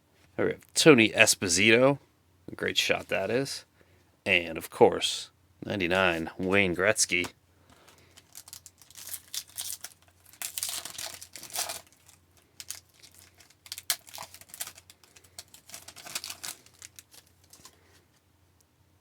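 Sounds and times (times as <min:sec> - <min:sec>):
cards being handled: 0:06.1 - 0:18.0
wrapper tearing and crinkling: 0:07.9 - 0:17.8.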